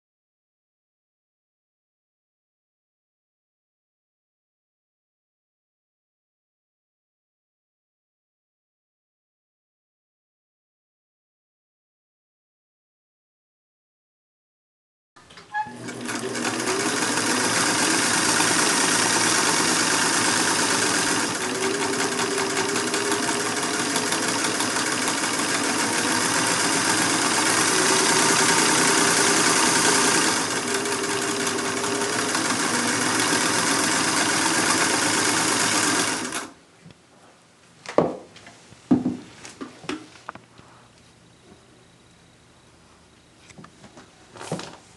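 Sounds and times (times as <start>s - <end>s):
sewing machine running: 15.5s - 36.6s.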